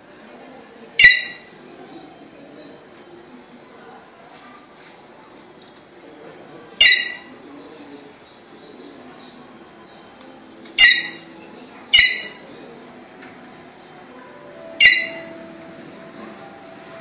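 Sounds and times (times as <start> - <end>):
jay calling: 1.0 - 1.5, 6.8 - 7.4, 10.8 - 12.6, 14.6 - 15.5.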